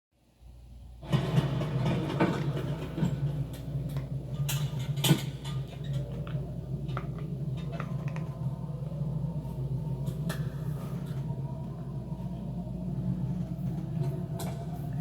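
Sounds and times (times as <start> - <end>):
low mechanical hum: 0.2 - 15.0
scattered clicks and knocks: 1.0 - 8.3.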